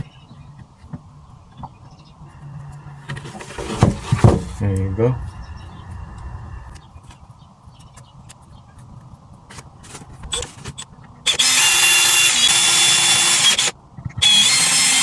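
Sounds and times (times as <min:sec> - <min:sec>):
power drill whining: 0:11.3 - 0:15.0.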